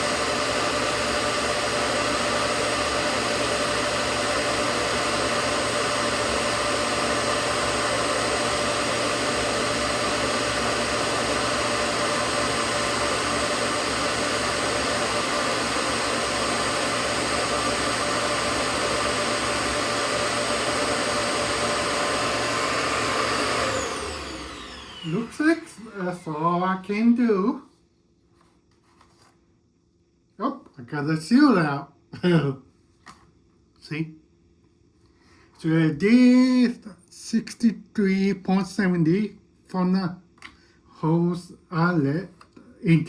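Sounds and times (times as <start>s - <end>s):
vacuum motor winding down: 0.0s - 26.7s
vacuum cleaner running: 0.0s - 27.4s.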